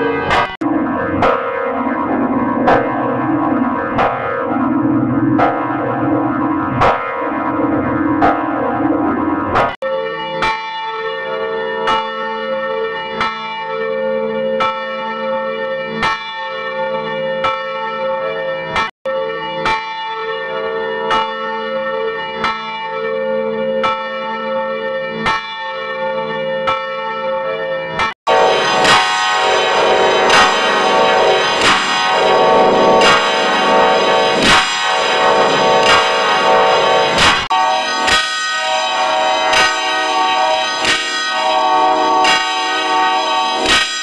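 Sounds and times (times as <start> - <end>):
bells ringing: 0.0 - 0.5, 28.3 - 44.0.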